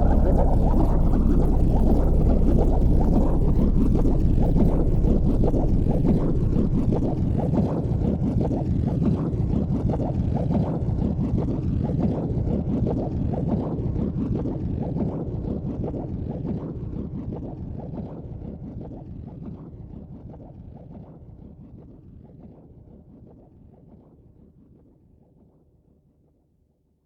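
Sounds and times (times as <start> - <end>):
low rough rumbling: 0.0 - 8.3.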